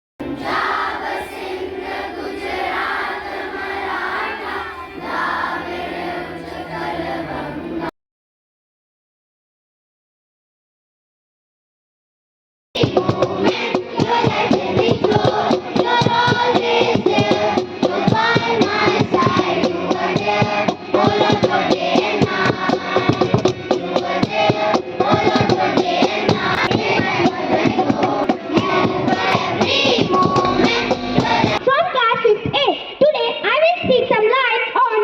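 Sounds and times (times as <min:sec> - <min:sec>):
children singing: 0:00.2 - 0:07.9, 0:12.8 - 0:31.6
instrumental backing music: 0:12.8 - 0:31.6.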